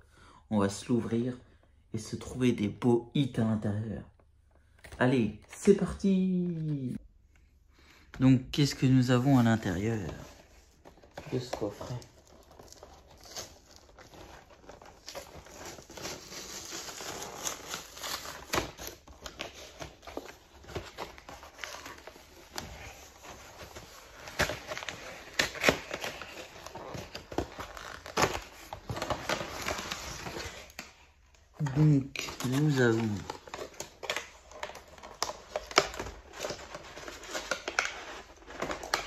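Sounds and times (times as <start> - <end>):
plastic wrap crinkling and tearing: 9.1 - 39.0.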